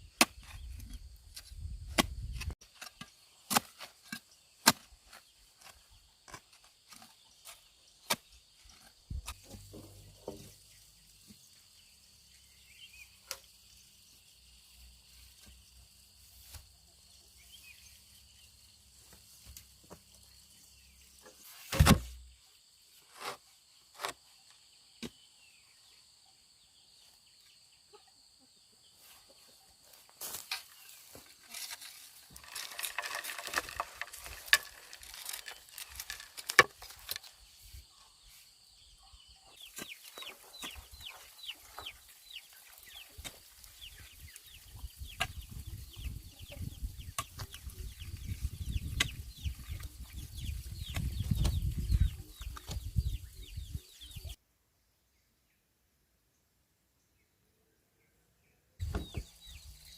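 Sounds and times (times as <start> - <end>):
birds chirping: 28.9 - 54.4, 58.0 - 59.9.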